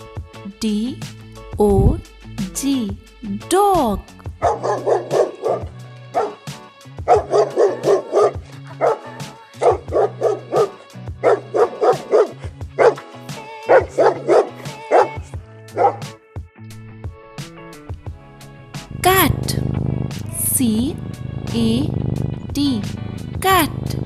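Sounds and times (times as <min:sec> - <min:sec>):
background music: 0:00.0 - 0:24.0
dog barking: 0:04.4 - 0:06.5, 0:07.1 - 0:16.2.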